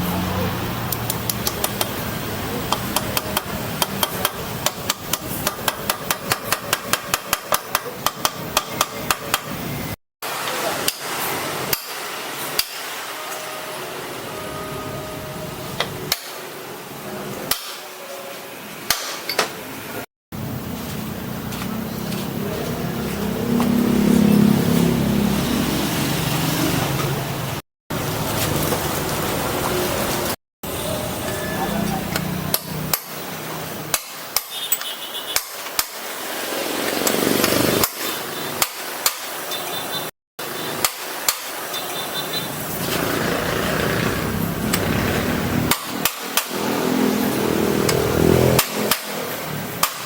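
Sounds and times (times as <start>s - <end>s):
hammer striking metal: 2.7s - 9.6s, 10.8s - 13.5s, 15.8s - 16.5s, 17.5s - 18.0s, 18.9s - 19.6s, 32.1s - 33.2s, 33.9s - 36.1s, 45.7s - 46.7s, 47.8s - 50.0s.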